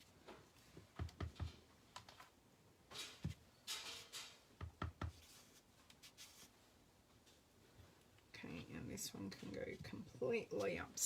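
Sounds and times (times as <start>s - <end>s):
light knocks and taps on desk: 0.8s - 2.2s, 4.6s - 5.2s
paper rustling: 5.1s - 6.6s.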